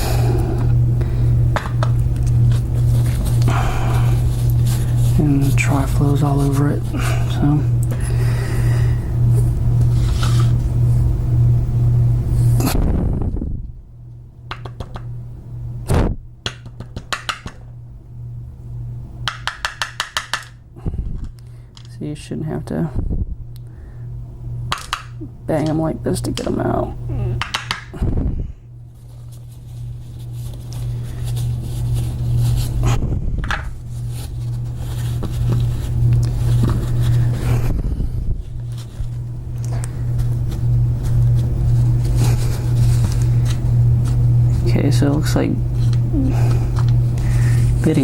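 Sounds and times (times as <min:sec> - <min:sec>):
low hum: 0:00.0 - 0:16.5, 0:20.5 - 0:48.0.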